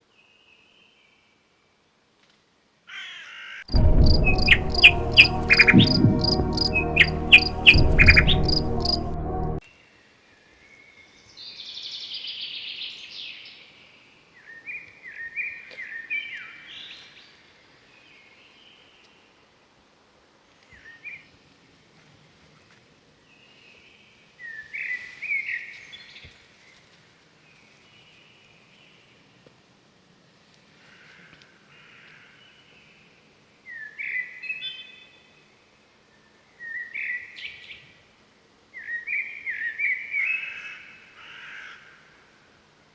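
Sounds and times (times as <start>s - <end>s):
music with ticking beat: 3.7s - 9.6s.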